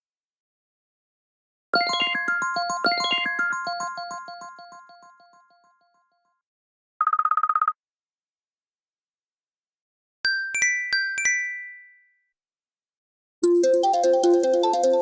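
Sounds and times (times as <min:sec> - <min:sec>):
musical ringtone: 0:01.8 - 0:05.9, 0:13.4 - 0:15.0.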